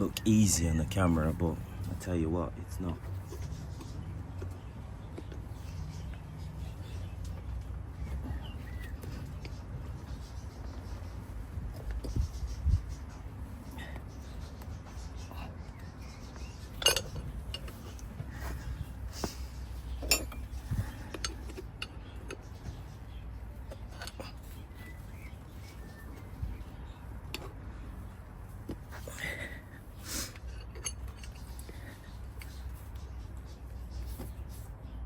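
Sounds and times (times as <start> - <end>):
metal clink: 16.8 - 17.8, 20.0 - 22.4.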